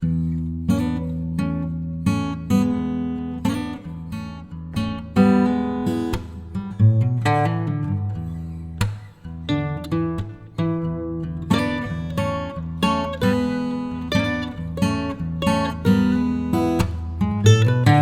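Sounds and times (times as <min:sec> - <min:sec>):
acoustic guitar chords: 0:00.0 - 0:18.0.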